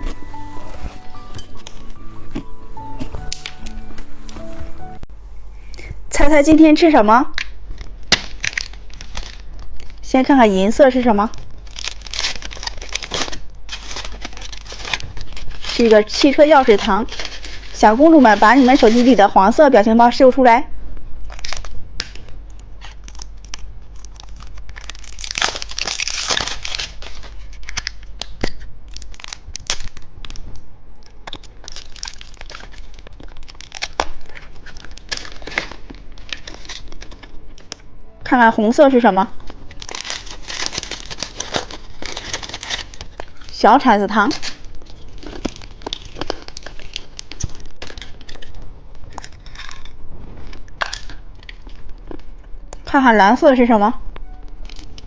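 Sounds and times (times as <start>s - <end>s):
candy wrapper crinkling and tearing: 7.4s - 10.1s, 10.8s - 19.2s, 21.2s - 38.0s, 39.3s - 43.6s, 44.2s - 52.9s.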